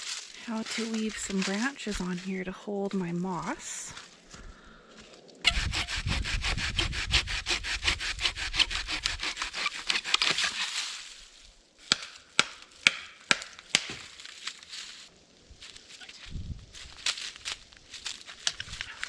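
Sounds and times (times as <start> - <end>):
hand saw cutting wood: 5.5 - 10.9.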